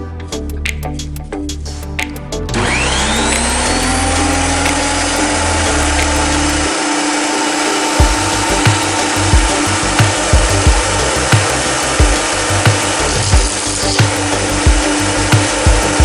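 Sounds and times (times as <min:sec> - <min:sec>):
thickness planer motor whine: 0:02.6 - 0:13.3.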